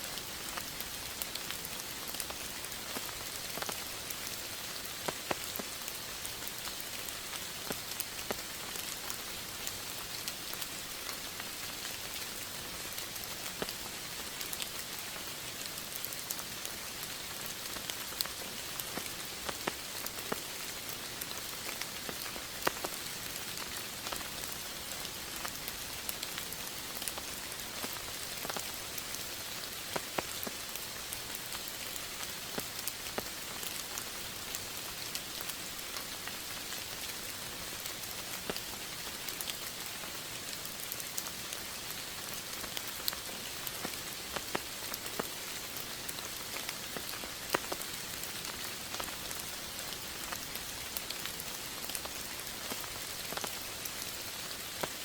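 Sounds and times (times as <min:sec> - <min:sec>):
steady rain hiss: 0:00.0 - 0:55.0
sharp raindrop ticks: 0:00.1 - 0:12.3, 0:12.9 - 0:55.0.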